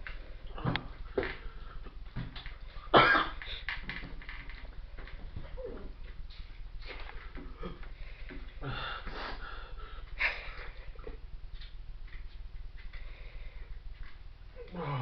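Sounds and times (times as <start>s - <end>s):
man sniffing and breathing hard: 8.2s - 10.1s.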